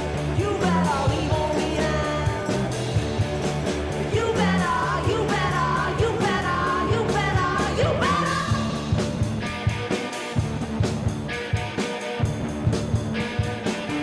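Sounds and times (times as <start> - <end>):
person singing: 0.0 - 2.7, 4.1 - 8.8
electric guitar: 0.0 - 14.0
steady drum beat: 0.0 - 14.0.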